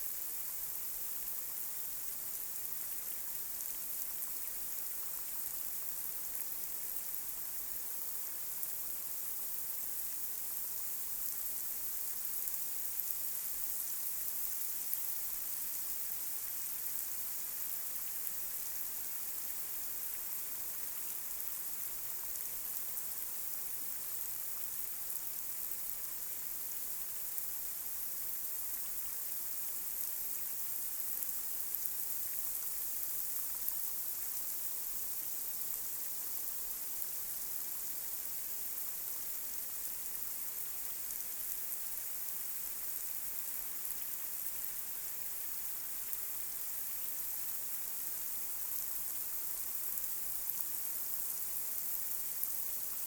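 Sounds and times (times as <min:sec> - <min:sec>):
light rain hissing: 0:00.0 - 0:53.0.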